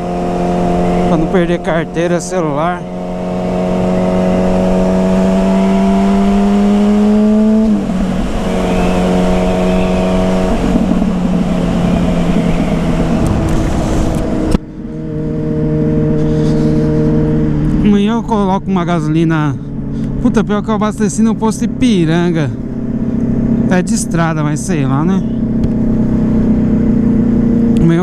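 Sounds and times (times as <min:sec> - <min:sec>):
motorcycle engine running: 0:00.0 - 0:28.0
wind noise: 0:06.2 - 0:17.7.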